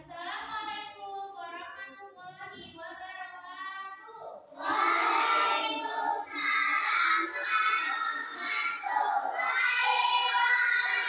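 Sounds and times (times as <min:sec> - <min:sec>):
children singing together: 0:04.6 - 0:11.0.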